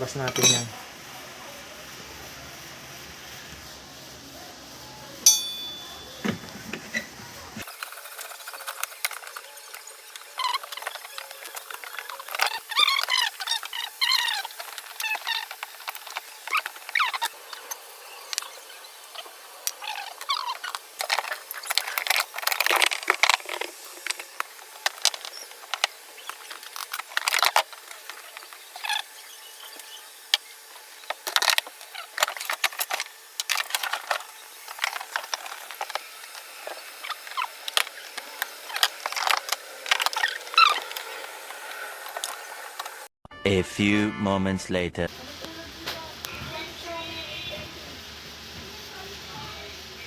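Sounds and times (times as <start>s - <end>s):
hand tools clicking and scraping: 0.2s - 0.7s, 19.2s - 29.1s, 31.1s - 43.0s.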